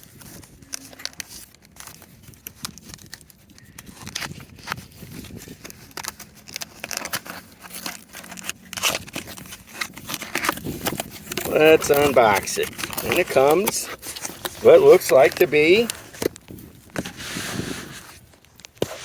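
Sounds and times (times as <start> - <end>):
cardboard packaging crinkling and tearing: 0.0 - 19.0.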